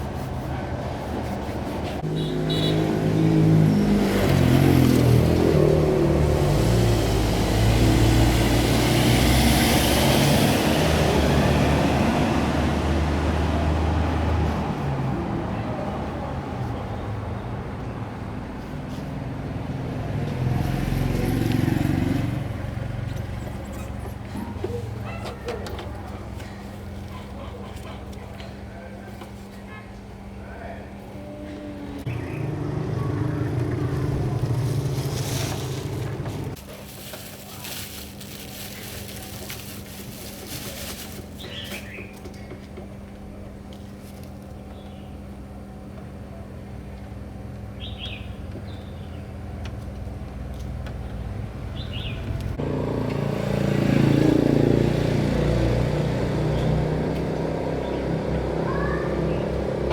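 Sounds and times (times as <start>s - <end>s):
bird chirp: 47.8s - 49.3s.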